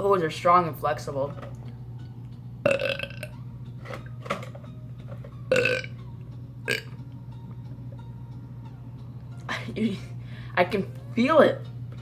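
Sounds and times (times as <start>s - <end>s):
man burping: 2.7s - 3.3s, 5.5s - 5.9s.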